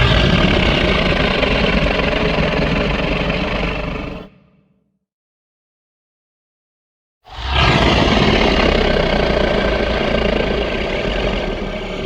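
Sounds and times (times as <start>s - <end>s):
dinosaur roar: 0.0s - 4.6s, 7.3s - 12.0s.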